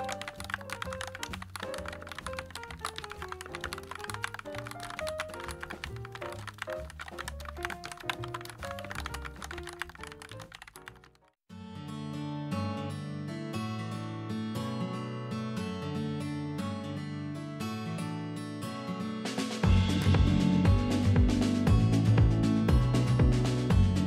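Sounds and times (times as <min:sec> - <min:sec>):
background music: 0:00.0 - 0:11.2, 0:19.4 - 0:24.0
mechanical keyboard typing: 0:00.0 - 0:11.2.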